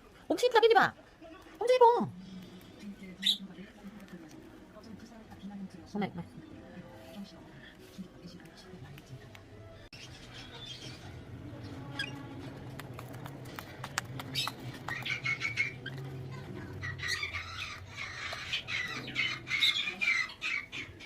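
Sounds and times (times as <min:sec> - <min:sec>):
lovebirds squawking and chattering: 0:09.9 - 0:21.0.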